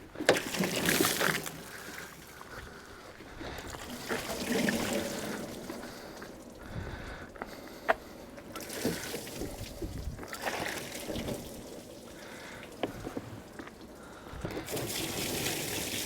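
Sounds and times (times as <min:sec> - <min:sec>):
water splashing and trickling: 0:00.1 - 0:16.0.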